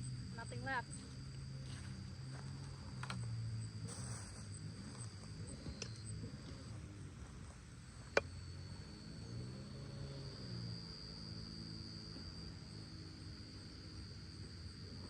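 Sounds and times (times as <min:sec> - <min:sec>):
insects chirring: 0:00.0 - 0:15.0
low hum: 0:00.0 - 0:15.0.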